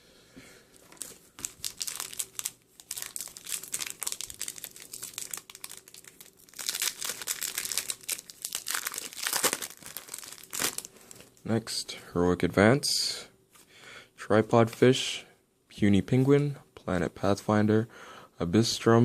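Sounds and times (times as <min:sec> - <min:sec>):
foil wrapper crinkling and tearing: 0:00.9 - 0:11.4.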